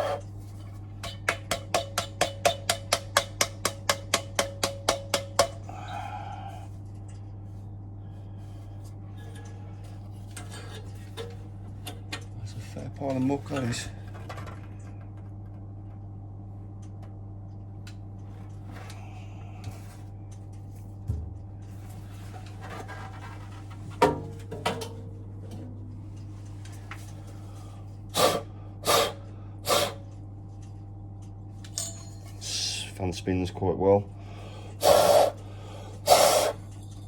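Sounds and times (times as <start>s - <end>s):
steady low hum: 0.0s - 37.0s
person blowing puffs of breath: 28.2s - 30.0s, 34.3s - 36.6s.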